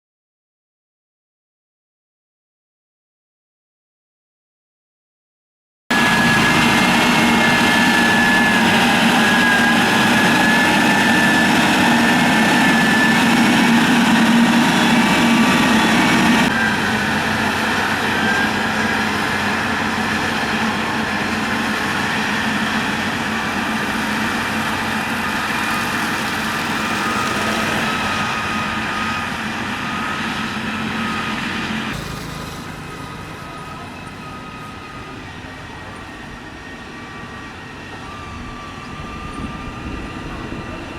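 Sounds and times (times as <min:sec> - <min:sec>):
diesel engine running: 0:05.9 - 0:36.9
high whine: 0:05.9 - 0:38.6.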